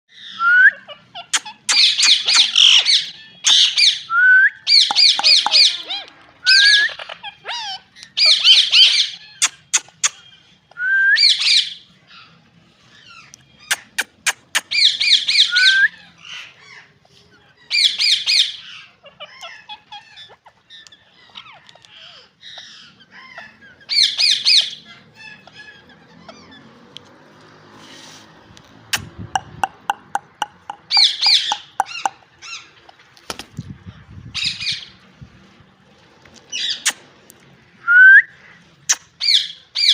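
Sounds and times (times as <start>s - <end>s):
parakeet squawking: 0.2s - 4.1s, 4.7s - 10.5s, 13.0s - 27.0s, 28.9s - 33.0s, 38.9s - 39.9s.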